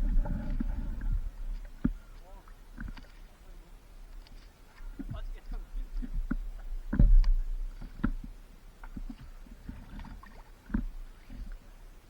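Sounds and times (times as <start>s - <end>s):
steady low rumble: 0.0s - 2.2s
paddle splashing water: 0.0s - 12.0s.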